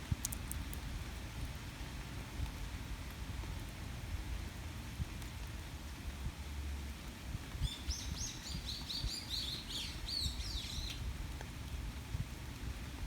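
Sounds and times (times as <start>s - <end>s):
steady rain: 0.0s - 13.0s
songbird chirping: 7.7s - 11.0s.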